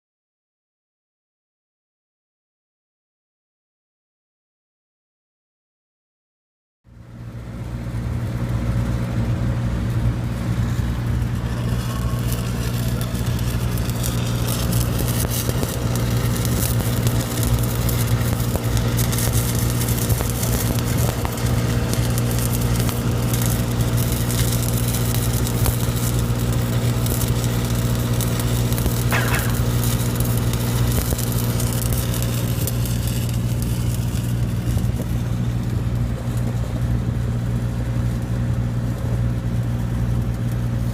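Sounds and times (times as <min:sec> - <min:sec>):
welding machine engine running: 0:07.2 - 0:40.9
welding arc crackling: 0:08.3 - 0:40.9.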